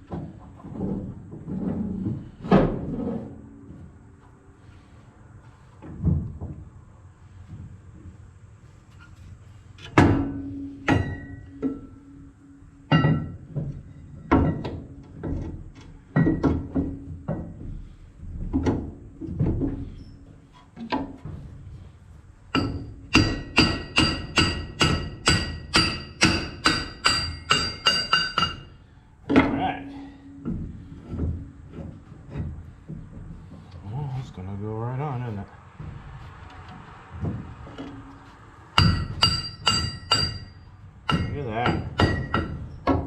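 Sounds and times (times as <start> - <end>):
hammer striking steel: 10.0 - 12.0, 22.5 - 28.7, 38.8 - 43.0.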